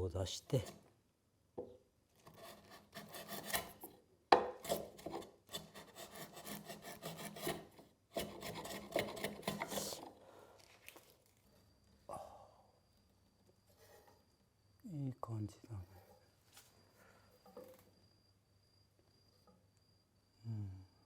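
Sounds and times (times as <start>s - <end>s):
hand plane scraping wood: 2.2s - 4.0s, 4.6s - 10.1s.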